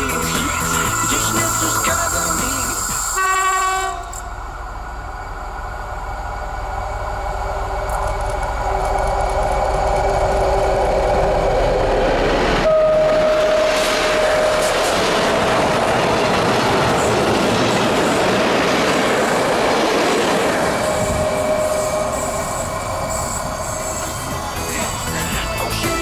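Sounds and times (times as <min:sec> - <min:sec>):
diesel train running: 0:00.0 - 0:26.0
locomotive horn: 0:01.9 - 0:04.4, 0:12.6 - 0:15.1.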